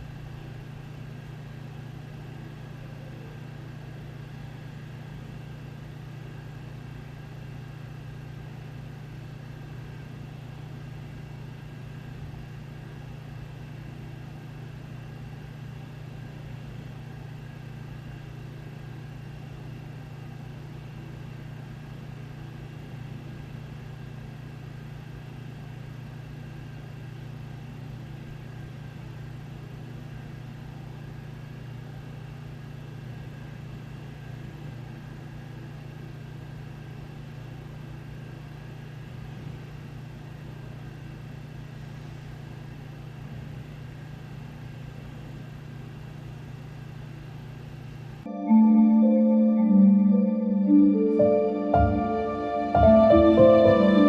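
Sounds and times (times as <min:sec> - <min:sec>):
low mechanical hum of machinery: 0:00.0 - 0:54.0
faint high steady tones: 0:48.3 - 0:54.0.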